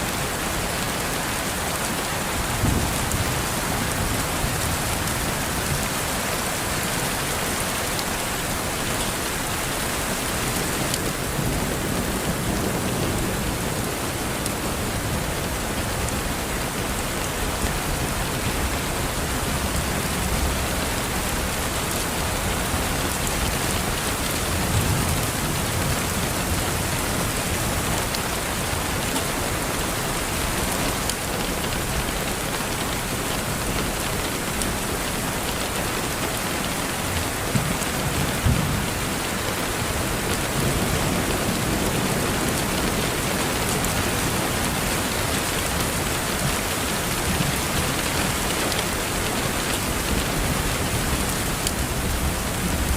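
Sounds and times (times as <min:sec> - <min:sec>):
rain on a window pane: 0:00.0 - 0:52.9.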